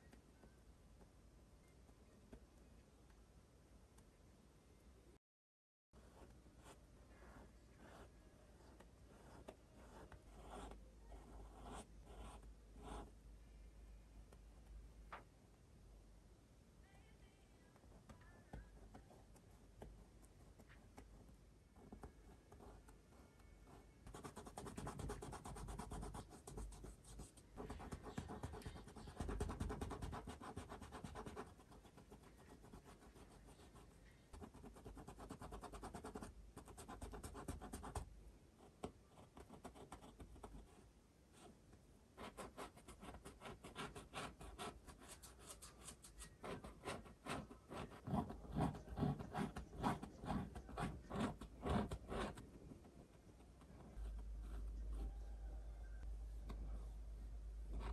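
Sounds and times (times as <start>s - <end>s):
paintbrush scratching canvas: 42.2s - 52.4s.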